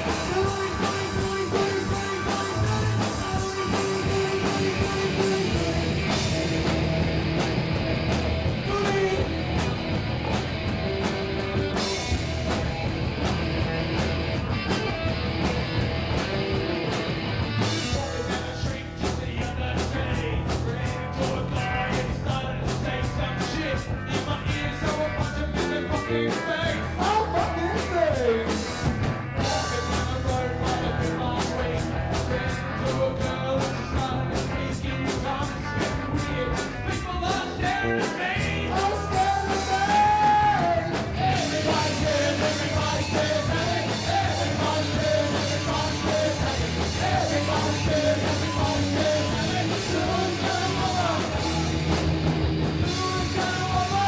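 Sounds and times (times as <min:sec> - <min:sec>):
person singing: 0:00.0 - 0:05.8, 0:08.6 - 0:09.3, 0:32.4 - 0:51.8, 0:52.8 - 0:54.0
rock band playing: 0:00.0 - 0:54.0.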